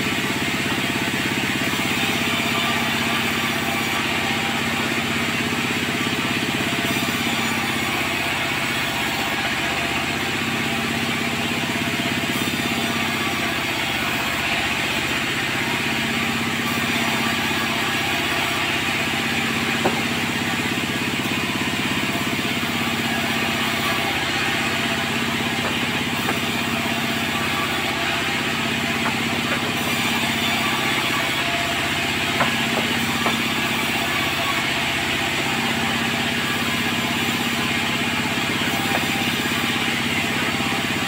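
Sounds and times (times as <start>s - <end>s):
sawmill machinery drone: 0.0s - 41.0s.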